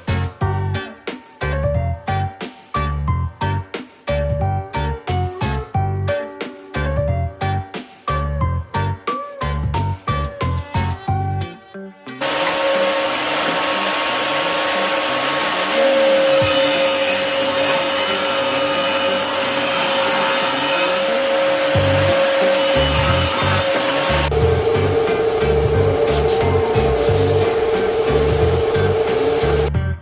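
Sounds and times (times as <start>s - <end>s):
background music: 0.0s - 30.0s
electric power tool on wood: 12.2s - 29.7s.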